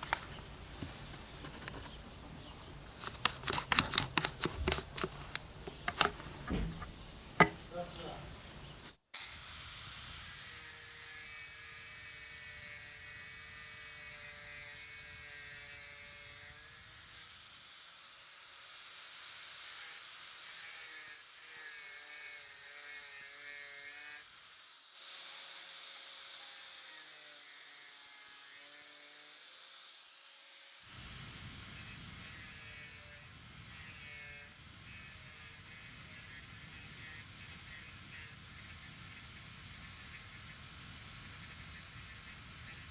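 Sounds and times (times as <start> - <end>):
electric hand tool motor whining: 31.1 - 42.9.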